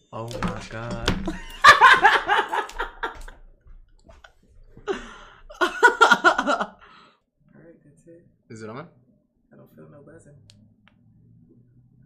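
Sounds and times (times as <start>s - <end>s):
people laughing loudly: 0.6s - 3.4s, 4.9s - 6.8s.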